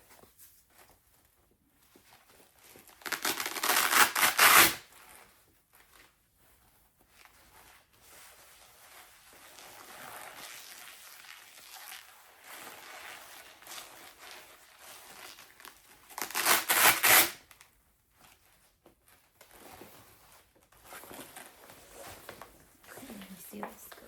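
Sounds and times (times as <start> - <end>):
soft rustling: 0.0 - 3.9, 4.8 - 16.3, 17.4 - 24.0
velcro tearing open: 2.8 - 4.9, 10.4 - 17.7.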